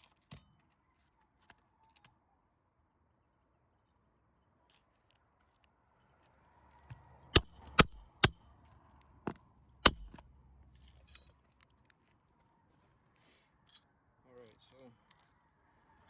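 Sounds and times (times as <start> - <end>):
hammer striking nails: 7.4 - 8.4, 9.8 - 10.2.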